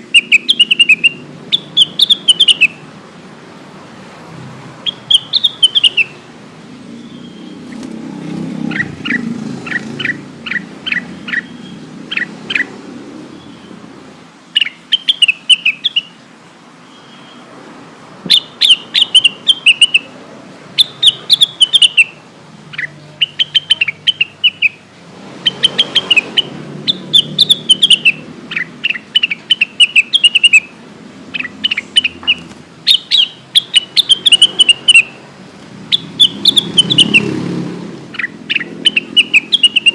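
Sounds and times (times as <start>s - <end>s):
bird whistled chirps: 0.0s - 2.8s, 4.8s - 6.2s, 14.6s - 16.1s, 18.3s - 20.1s, 20.8s - 22.2s, 22.8s - 24.8s, 25.4s - 30.7s, 31.4s - 35.2s, 35.9s - 37.3s, 38.1s - 39.9s.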